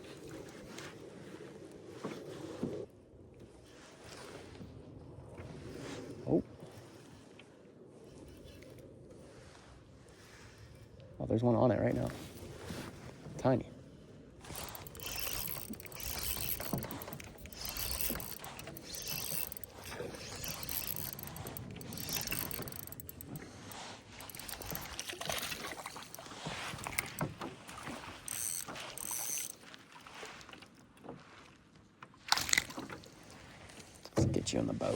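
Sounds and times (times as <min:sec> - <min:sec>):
fishing reel cranking: 0:14.4 - 0:29.7, 0:32.3 - 0:32.8.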